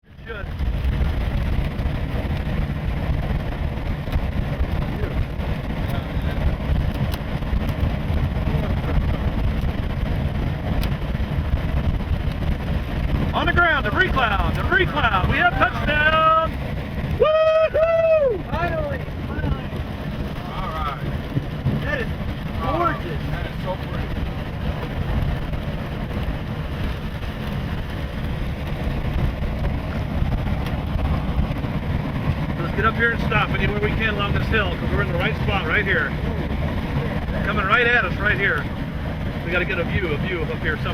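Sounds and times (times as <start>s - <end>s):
vehicle engine and road rumble: 0.0s - 40.9s
wind noise: 0.0s - 40.9s.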